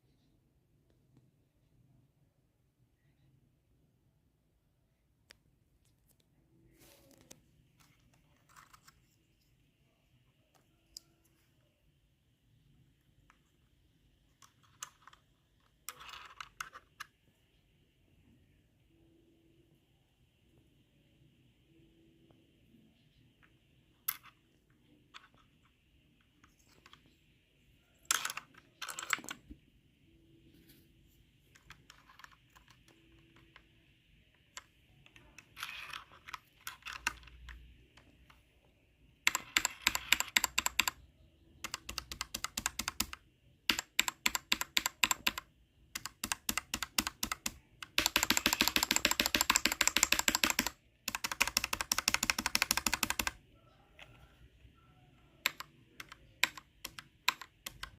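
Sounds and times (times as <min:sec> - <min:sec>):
typing on mechanical keyboard: 0:34.5 - 0:38.1, 0:39.2 - 0:53.4, 0:55.4 - 0:58.0.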